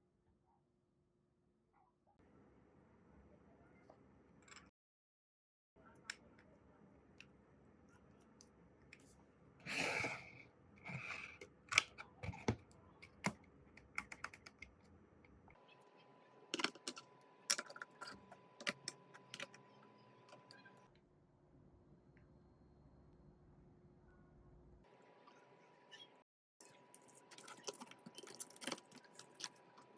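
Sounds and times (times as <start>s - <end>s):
small hard objects clicking: 26.7s - 29.5s.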